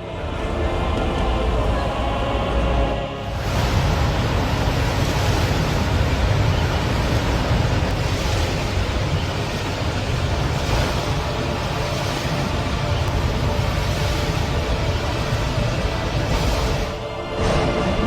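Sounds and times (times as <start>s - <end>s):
wind on microphone: 0.0s - 18.0s
water pouring down: 3.2s - 17.0s.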